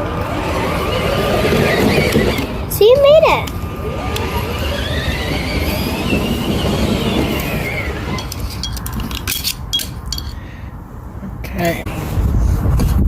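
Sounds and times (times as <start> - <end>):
metal-on-metal squeal: 4.3 - 8.7.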